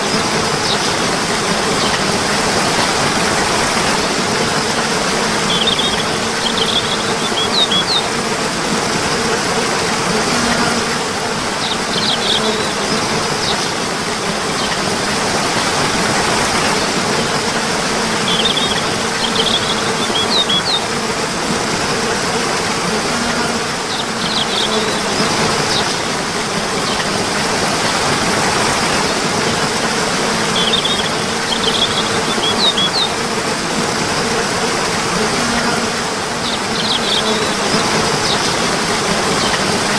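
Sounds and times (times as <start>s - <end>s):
flowing water: 0.0s - 39.9s
high bird chirps: 5.5s - 8.1s, 11.6s - 12.7s, 18.3s - 20.8s, 30.5s - 33.1s.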